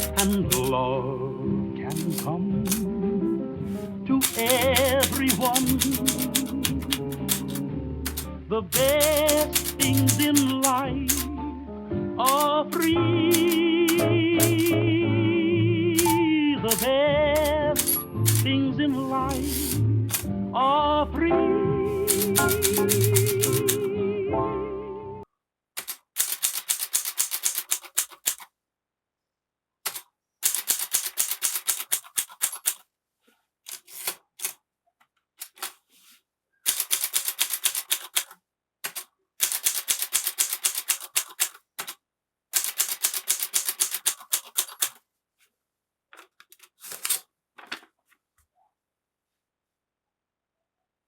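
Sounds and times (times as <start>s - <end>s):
typewriter keystrokes: 0.0s - 0.8s, 1.9s - 2.9s, 4.2s - 11.4s, 12.2s - 14.8s, 16.0s - 18.5s, 19.2s - 20.3s, 22.0s - 23.9s, 25.8s - 28.5s, 29.9s - 32.8s, 33.7s - 34.6s, 35.4s - 35.8s, 36.7s - 42.0s, 42.6s - 45.0s.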